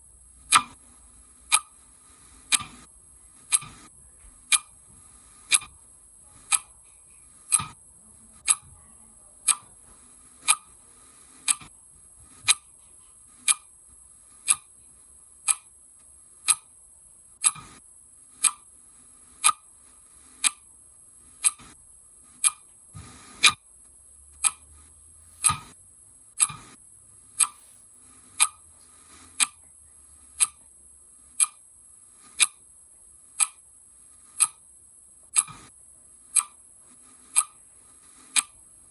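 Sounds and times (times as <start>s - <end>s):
clock ticking: 0.4s - 0.8s, 1.5s - 7.8s, 8.4s - 8.8s, 9.4s - 9.8s, 10.4s - 10.8s, 11.4s - 11.7s, 12.3s - 12.7s, 13.4s - 13.7s, 14.4s - 14.8s, 15.4s - 15.7s, 16.4s - 16.7s, 17.4s - 17.8s, 18.4s - 18.7s, 19.4s - 19.6s, 20.4s - 20.6s, 21.4s - 21.8s, 22.4s - 22.7s, 24.4s - 25.8s, 26.4s - 26.8s, 27.4s - 29.7s, 30.4s - 30.6s, 31.4s - 31.6s, 32.4s - 32.6s, 33.4s - 33.6s, 34.4s - 34.6s, 37.3s - 37.6s, 38.4s - 38.6s
steady high hiss: 18.2s - 32.4s.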